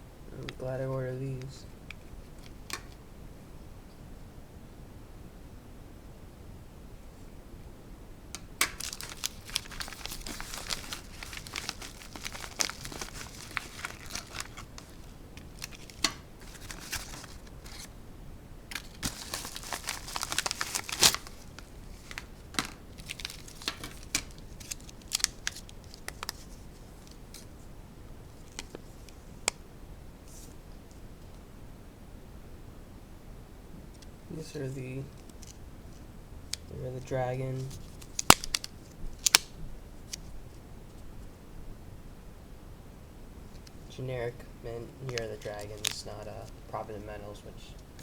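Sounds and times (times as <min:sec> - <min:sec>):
packaging crinkling and tearing: 0:08.6 - 0:17.9, 0:18.7 - 0:27.6, 0:28.4 - 0:29.6, 0:35.1 - 0:40.3, 0:44.9 - 0:46.8.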